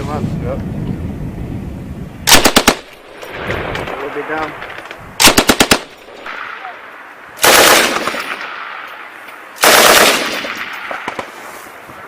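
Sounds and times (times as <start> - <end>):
machine gun bursts echoing: 2.3 - 3.5, 5.2 - 6.4, 7.4 - 8.6, 9.6 - 11.2.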